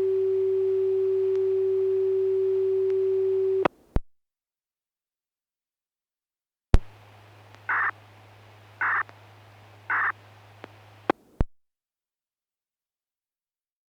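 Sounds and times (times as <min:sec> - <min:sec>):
crow cawing: 0:08.8 - 0:09.1, 0:09.9 - 0:10.2
sharp clicks: 0:08.8 - 0:11.2.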